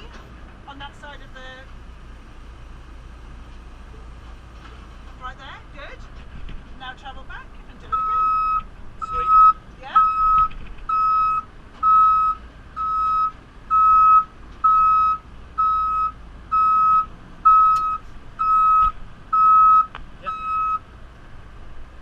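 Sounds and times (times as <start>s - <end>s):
engine running: 0.0s - 22.0s
reversing alarm beeping: 7.9s - 20.8s.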